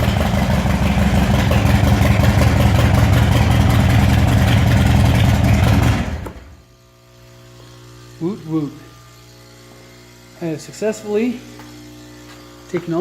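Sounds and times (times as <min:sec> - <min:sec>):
motorcycle engine idling: 0:00.0 - 0:06.4.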